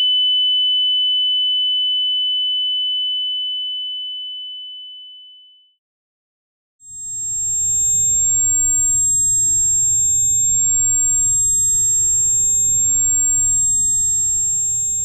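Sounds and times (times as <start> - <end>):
high-pitched ringing tone: 6.9 - 15.0.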